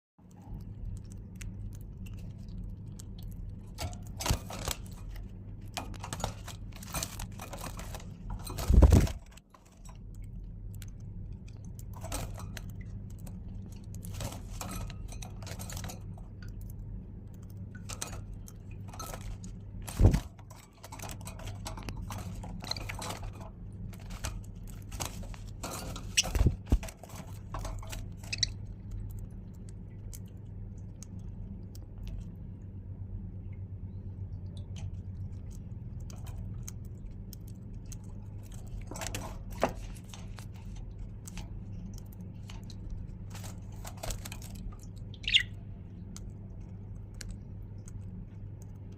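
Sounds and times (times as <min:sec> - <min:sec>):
steady low hum: 0:00.2 - 0:48.9
birds cracking seed: 0:10.0 - 0:32.2, 0:35.7 - 0:48.7.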